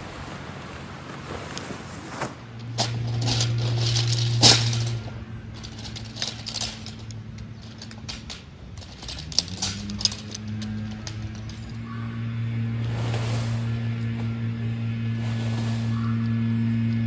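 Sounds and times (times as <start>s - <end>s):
low steady hum: 2.4s - 17.0s
light clicks and clatters: 2.6s - 12.0s.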